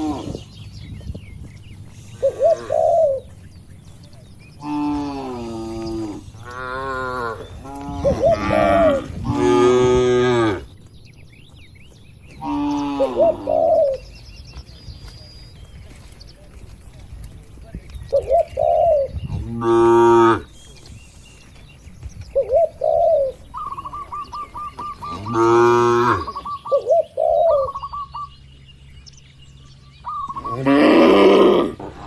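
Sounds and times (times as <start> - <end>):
dove cooing: 2.0 - 3.4, 4.6 - 10.7, 12.4 - 14.2, 18.1 - 20.5, 22.3 - 28.3, 30.0 - 31.8
cattle mooing: 4.6 - 10.7, 25.1 - 26.4, 30.4 - 31.8.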